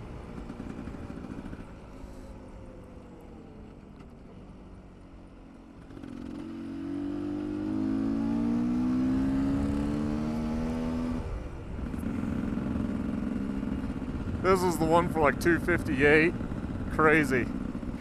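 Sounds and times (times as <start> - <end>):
dirt bike engine revving: 6.0 - 11.2.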